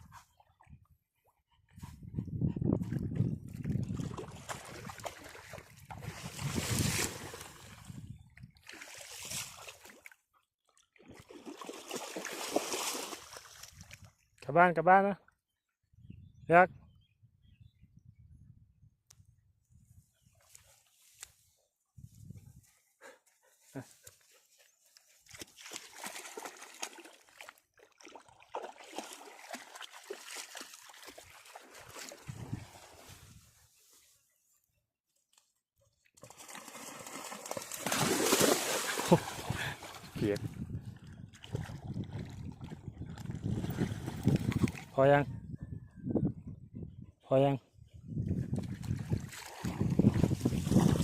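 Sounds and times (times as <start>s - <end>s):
water splashing and sloshing: 2.8s - 14.2s, 24.9s - 34.1s, 36.2s - 45.1s, 48.5s - 51.0s.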